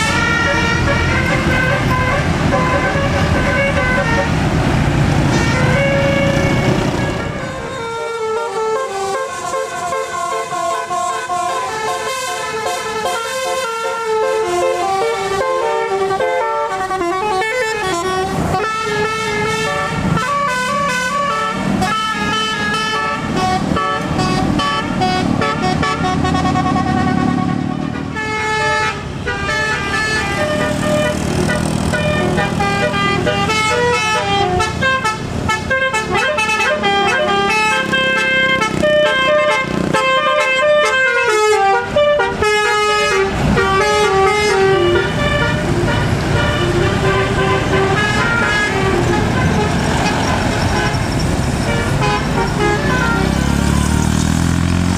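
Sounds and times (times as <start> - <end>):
bus engine running: 0.0 - 54.9
multi-tone bus horn melody: 0.0 - 54.9.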